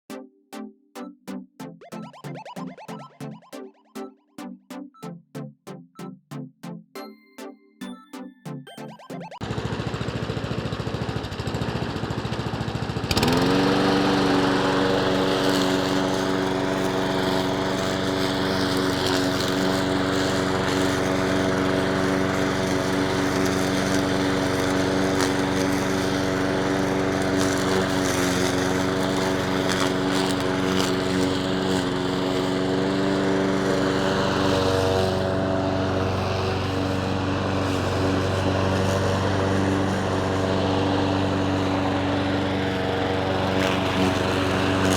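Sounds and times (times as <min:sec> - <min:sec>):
lawn mower engine revving: 0:09.4 - 0:44.9.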